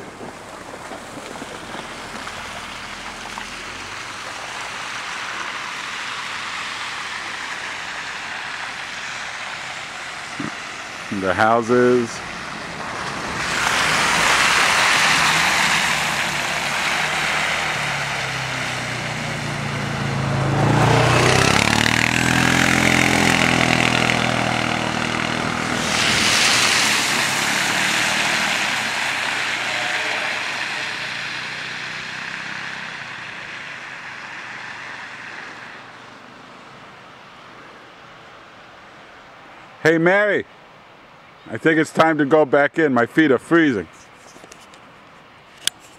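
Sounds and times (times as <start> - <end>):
tyre hiss on snowy road: 0.0 - 36.8
vehicle engine passing: 0.0 - 37.5.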